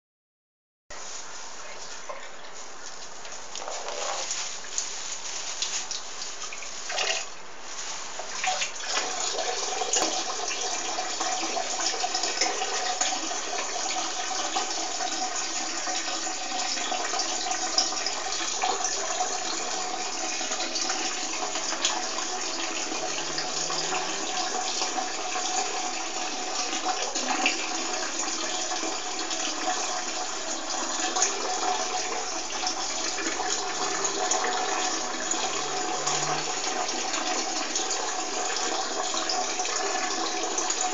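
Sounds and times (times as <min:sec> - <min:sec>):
urine splashing into toilet water: 0:08.1 - 0:40.9.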